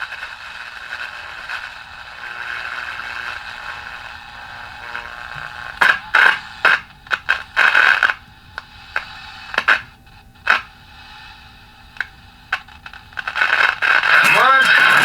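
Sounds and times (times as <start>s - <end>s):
faint hum: 0.0s - 15.0s
radio hiss: 0.0s - 15.0s
radio static bursts: 12.8s - 15.0s.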